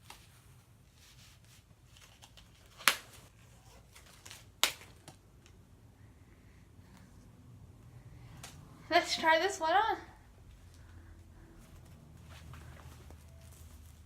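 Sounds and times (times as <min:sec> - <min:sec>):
rustling of handled objects: 0:10.4 - 0:14.0.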